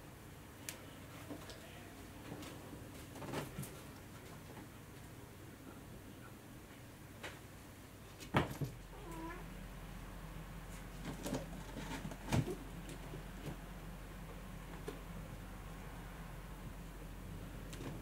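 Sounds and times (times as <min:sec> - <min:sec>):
cat meowing: 0:09.0 - 0:09.5.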